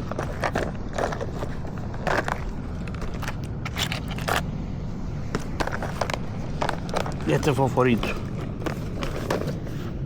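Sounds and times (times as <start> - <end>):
fishing tackle clicks and rattles: 0.0 - 4.4.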